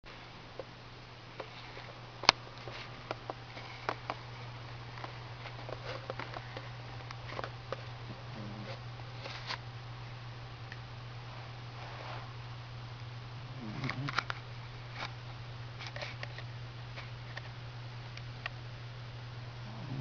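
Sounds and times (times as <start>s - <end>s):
steady low hum: 0.1s - 20.0s
dog snoring softly: 8.1s - 8.8s, 13.4s - 14.3s, 19.6s - 20.0s.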